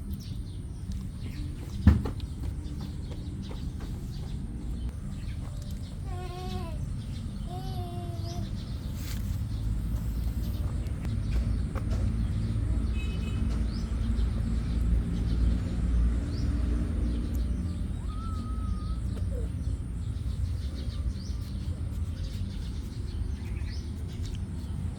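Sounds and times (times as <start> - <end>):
kitten meowing: 17.8 - 19.6.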